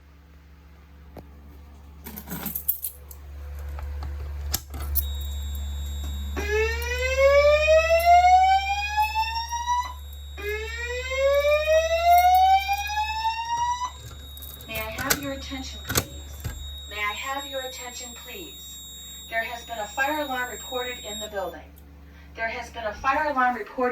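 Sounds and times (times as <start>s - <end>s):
whoop evacuation tone: 5.0s - 21.5s
clicks: 11.3s - 18.4s.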